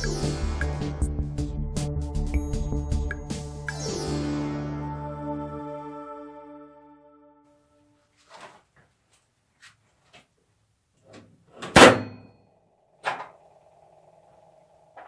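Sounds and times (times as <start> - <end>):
faint steady hum: 10.4 - 15.0
sharp metal clank: 11.6 - 12.4.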